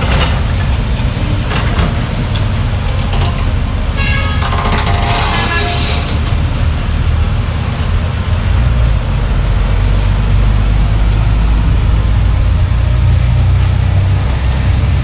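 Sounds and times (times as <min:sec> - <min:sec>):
road noise: 0:00.0 - 0:15.0
vehicle engine rumbling: 0:00.0 - 0:15.0.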